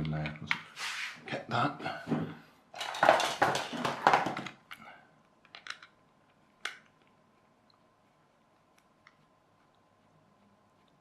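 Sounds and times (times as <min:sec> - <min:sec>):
plastic clattering rattle: 0:02.8 - 0:04.6.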